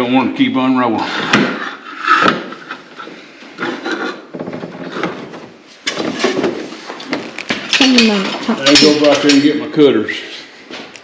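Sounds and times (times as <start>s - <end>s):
objects knocking and clattering: 1.2s - 9.7s.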